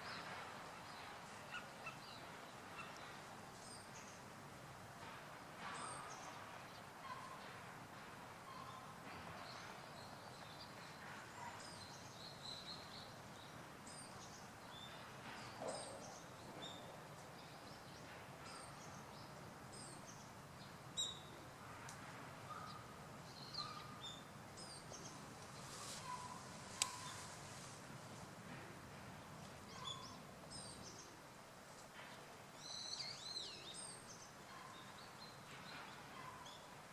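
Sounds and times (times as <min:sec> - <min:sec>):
steady background hiss: 0:00.0 - 0:36.9
faint bird chirps: 0:23.4 - 0:27.3, 0:29.7 - 0:30.8
sharp click: 0:26.8 - 0:27.0.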